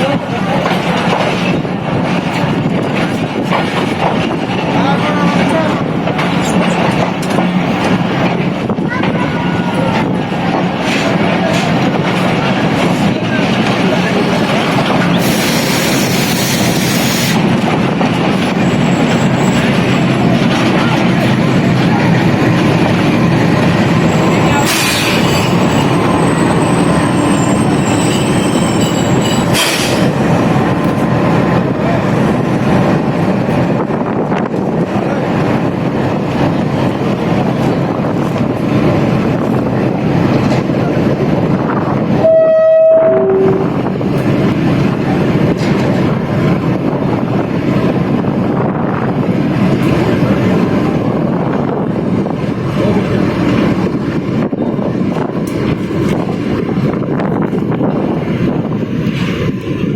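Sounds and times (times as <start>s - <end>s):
train wheels rumbling on track: 0.0s - 59.9s
two-note tone: 42.2s - 43.8s.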